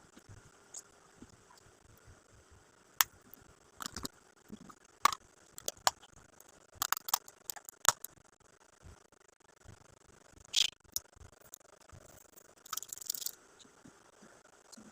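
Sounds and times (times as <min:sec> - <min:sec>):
packaging clicks and snips: 0:03.8 - 0:04.1, 0:06.8 - 0:08.1.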